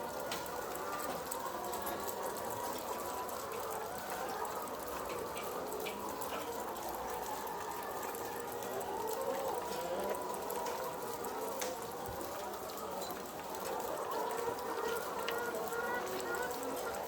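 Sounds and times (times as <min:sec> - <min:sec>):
flock of chickens calling: 0:00.0 - 0:17.0.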